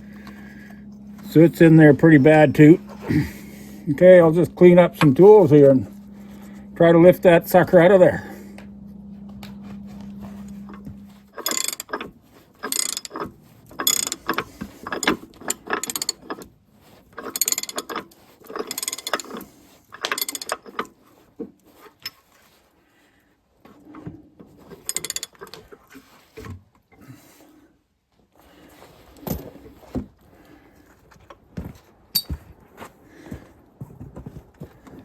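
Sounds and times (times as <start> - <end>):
steady hum: 0.0 - 16.3
metal hand tools clanking: 10.4 - 16.4, 17.2 - 19.4, 20.0 - 20.9.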